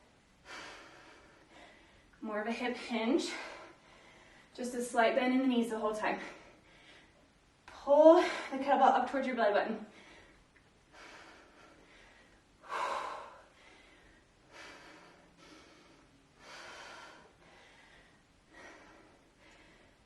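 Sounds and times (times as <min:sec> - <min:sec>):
woman breathing hard: 0:00.4 - 0:02.2, 0:03.2 - 0:04.6, 0:06.2 - 0:07.4, 0:09.9 - 0:20.0.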